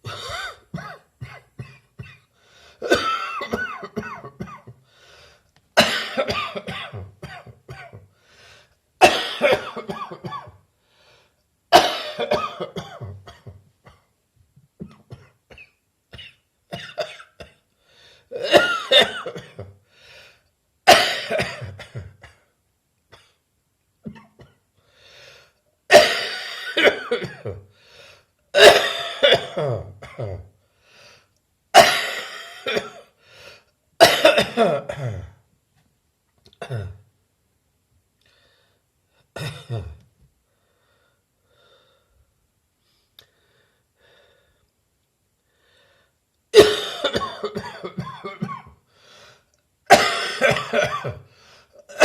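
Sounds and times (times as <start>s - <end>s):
person coughing: 0.0s - 4.8s, 5.8s - 8.1s, 9.0s - 10.6s, 11.7s - 14.1s, 14.8s - 17.6s, 18.3s - 19.8s, 20.9s - 22.5s, 24.1s - 24.6s, 25.9s - 27.7s, 28.6s - 30.5s, 31.8s - 33.2s, 34.0s - 35.4s, 36.6s - 37.1s, 39.4s - 40.0s, 46.6s - 48.8s, 49.9s - 52.0s
person breathing: 2.3s - 2.8s, 4.8s - 5.5s, 8.1s - 8.8s, 10.7s - 11.4s, 17.7s - 18.3s, 19.8s - 20.5s, 24.8s - 25.7s, 27.7s - 28.4s, 30.6s - 31.4s, 33.2s - 33.8s, 38.2s - 39.3s, 40.4s - 44.7s, 45.4s - 46.2s, 48.9s - 49.6s, 51.2s - 51.8s.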